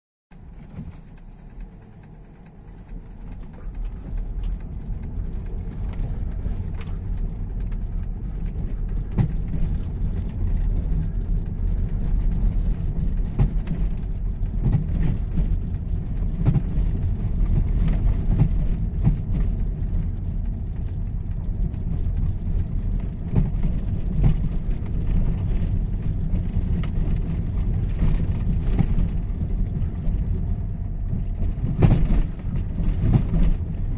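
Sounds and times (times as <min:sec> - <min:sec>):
car engine and road rumble: 0:00.3 - 0:33.9
sharp knocks over bumps: 0:31.2 - 0:33.9.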